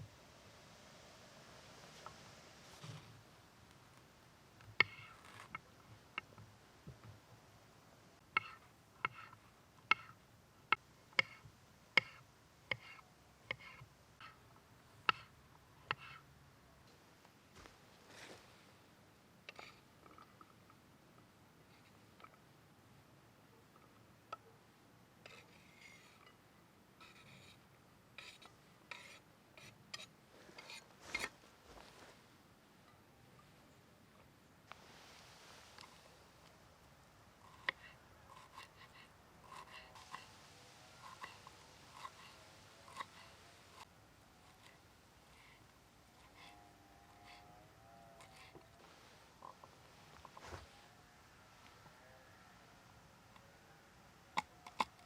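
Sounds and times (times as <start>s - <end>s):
scraping and rubbing strokes: 1.0s - 3.3s, 4.8s - 5.7s, 28.2s - 32.3s, 34.7s - 36.6s, 37.3s - 47.6s, 48.2s - 51.8s.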